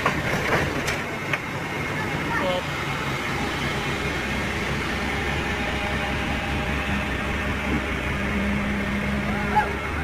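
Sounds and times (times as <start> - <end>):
heavy machinery engine rumble: 0.0 - 10.0
low hum: 0.0 - 10.0.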